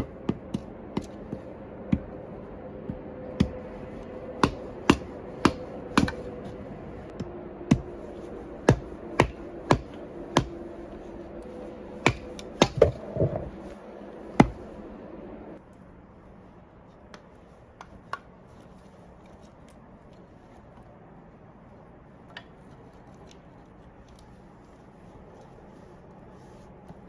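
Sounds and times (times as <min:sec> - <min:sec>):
steady low hum: 0:00.0 - 0:17.7.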